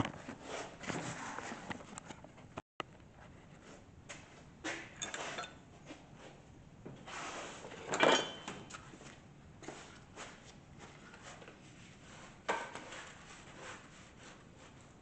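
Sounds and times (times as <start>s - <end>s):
metal tools clinking: 5.0s - 5.6s, 7.9s - 8.7s.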